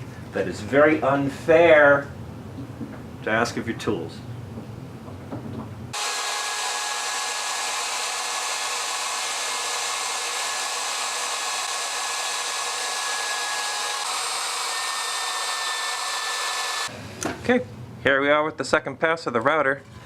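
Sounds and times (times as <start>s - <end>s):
wood router high whine: 6.0s - 16.9s.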